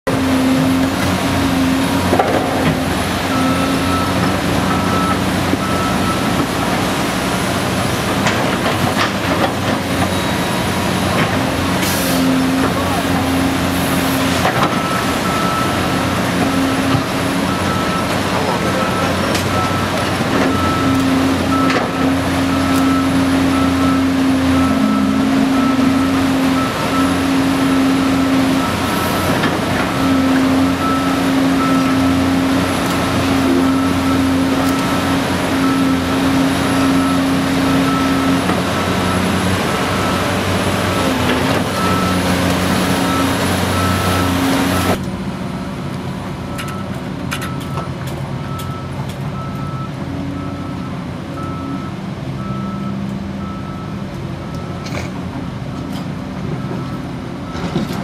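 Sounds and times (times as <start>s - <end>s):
excavator diesel engine working: 0.1s - 58.0s
travel alarm beeping: 3.3s - 6.8s, 17.5s - 32.3s, 33.0s - 45.0s.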